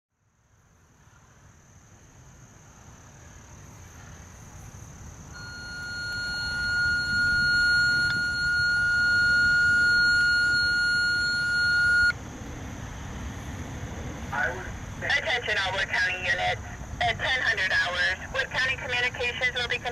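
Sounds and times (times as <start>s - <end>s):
low outdoor rumble: 0.2s - 19.9s
electronic alert tone over radio: 5.4s - 12.1s.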